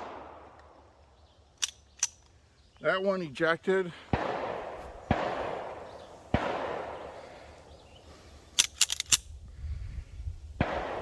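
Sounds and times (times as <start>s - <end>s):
pistol shots with echo: 0.0s - 0.8s, 4.1s - 7.4s, 10.6s - 11.0s
light high-pitched metallic clicks: 1.6s - 2.9s, 8.6s - 9.3s.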